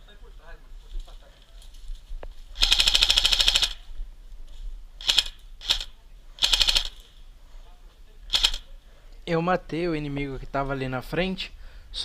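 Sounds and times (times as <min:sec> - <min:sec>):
airsoft gun full-auto bursts: 0:02.6 - 0:03.9, 0:05.0 - 0:07.0, 0:08.3 - 0:08.7.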